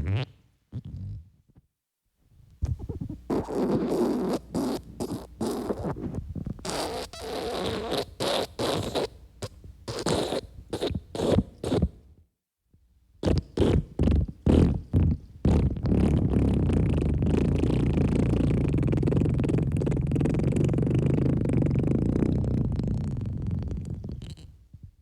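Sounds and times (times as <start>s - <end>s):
cartoon wet farts: 13.2s - 24.5s.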